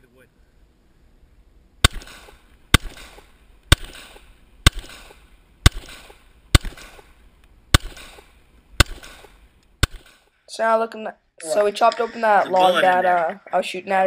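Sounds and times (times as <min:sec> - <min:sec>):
pistol shots with echo: 0:01.8 - 0:07.1, 0:07.7 - 0:10.2.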